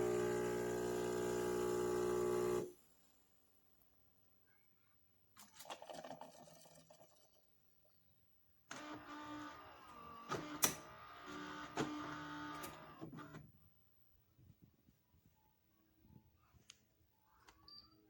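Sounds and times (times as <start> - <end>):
espresso machine whirring: 0.0 - 2.7.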